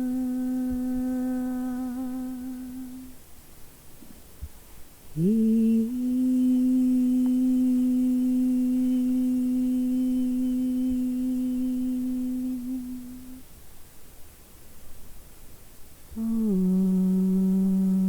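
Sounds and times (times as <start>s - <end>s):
person singing wordlessly: 0.0s - 3.2s, 5.1s - 13.4s, 16.2s - 18.0s.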